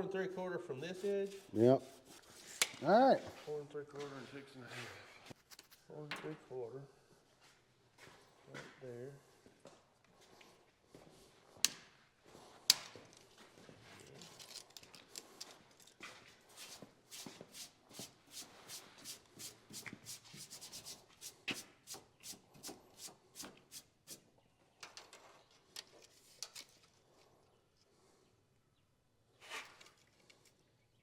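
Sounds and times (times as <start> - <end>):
scratchy marking on sheet metal: 0.8 - 2.7, 16.6 - 24.2.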